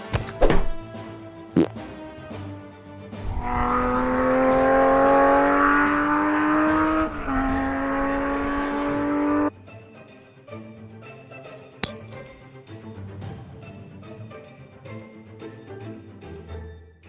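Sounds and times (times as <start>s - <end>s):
engine accelerating: 3.5s - 9.5s.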